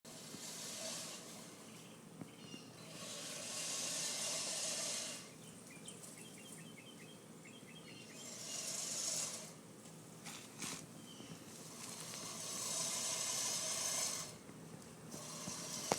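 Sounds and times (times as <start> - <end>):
distant lawnmower engine: 0.1 - 15.9
rushing hiss: 3.0 - 5.3.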